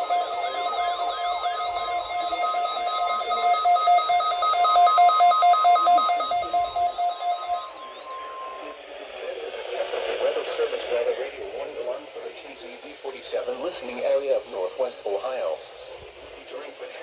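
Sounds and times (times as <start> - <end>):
steady alarm tone: 0.0 - 8.9
rapid beeping: 0.0 - 12.2.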